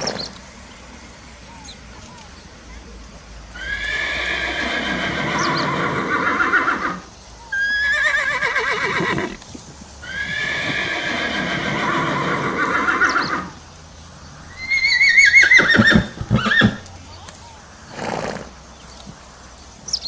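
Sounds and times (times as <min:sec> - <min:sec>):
horse whinnying: 0:00.0 - 0:00.4, 0:03.6 - 0:07.0, 0:07.6 - 0:09.4, 0:10.0 - 0:13.5, 0:14.5 - 0:16.9, 0:17.9 - 0:18.6.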